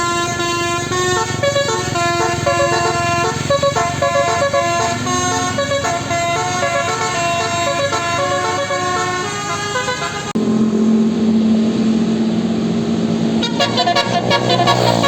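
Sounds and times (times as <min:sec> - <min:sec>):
bus melody horn: 0:00.0 - 0:10.6, 0:13.3 - 0:15.0
low drone: 0:10.4 - 0:15.0.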